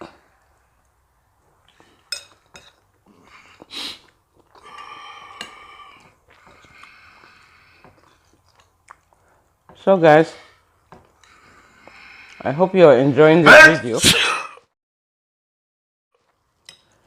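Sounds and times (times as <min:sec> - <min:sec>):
sharp burst of breath: 0:03.6 - 0:04.0.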